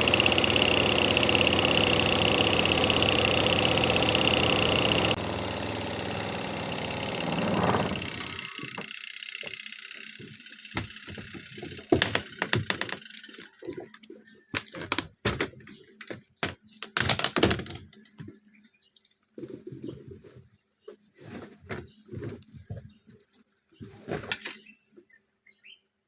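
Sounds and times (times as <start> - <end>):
washing machine motor whining: 0.0 - 9.6.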